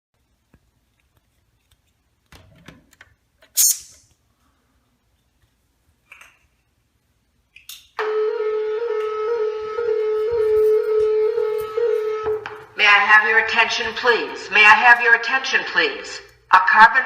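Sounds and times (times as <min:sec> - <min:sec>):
fire alarm buzzing tone: 0:08.0 - 0:15.0.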